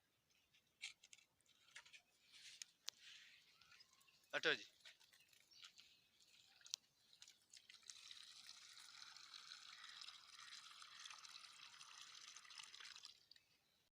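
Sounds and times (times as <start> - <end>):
liquid pouring: 3.4 - 13.6.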